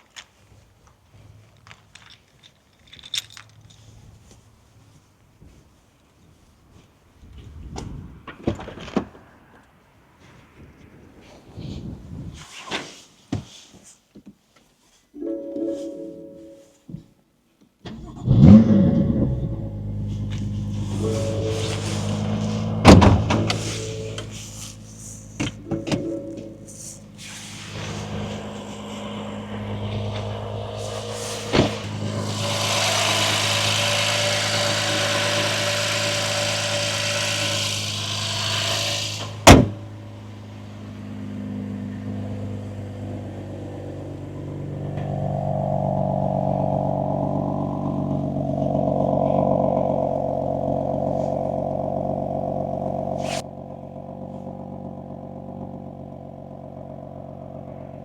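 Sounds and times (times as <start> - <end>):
car engine accelerating: 17.9 - 58.0.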